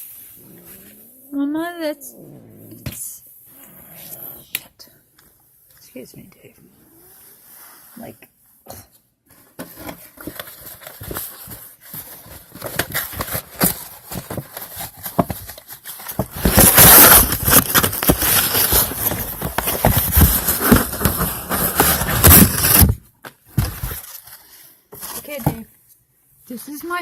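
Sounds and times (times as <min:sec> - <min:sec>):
cat scratching and knocking a box: 0:09.4 - 0:24.2.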